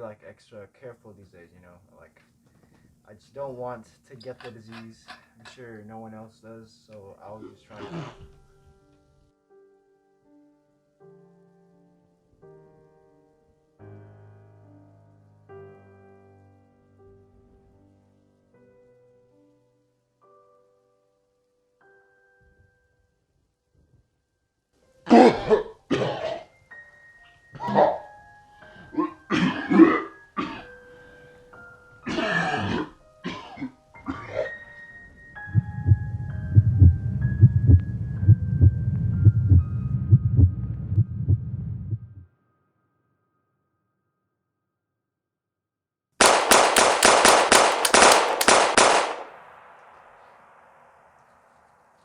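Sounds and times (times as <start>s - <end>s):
soft background music: 0.0s - 44.0s
person coughing harshly: 7.4s - 8.3s, 25.1s - 26.4s, 29.3s - 30.7s, 32.1s - 34.4s
rapid gunfire: 46.2s - 50.7s.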